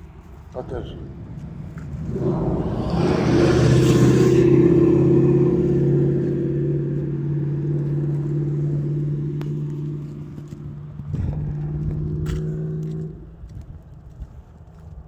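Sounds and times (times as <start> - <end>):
vehicle engine running: 0.0 - 15.0
rush of noise: 0.7 - 6.0.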